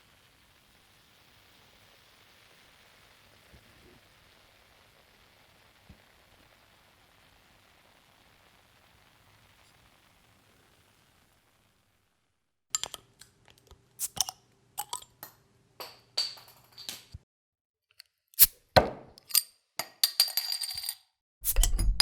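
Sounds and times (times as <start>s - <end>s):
glass bottle and cap clinking: 12.8s - 17.2s, 18.4s - 22.0s.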